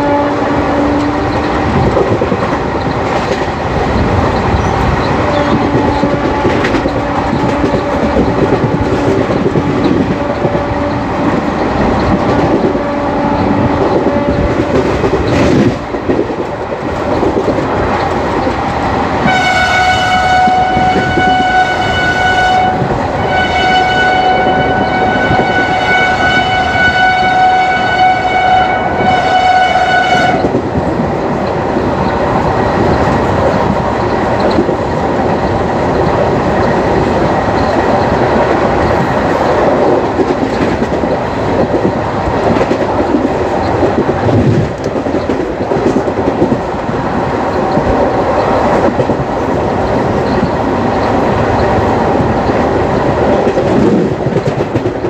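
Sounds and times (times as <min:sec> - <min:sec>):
locomotive horn blast: 0:00.0 - 0:01.4, 0:05.3 - 0:11.2, 0:12.4 - 0:15.0, 0:19.2 - 0:30.5
train wheels clattering on track: 0:00.0 - 0:55.0.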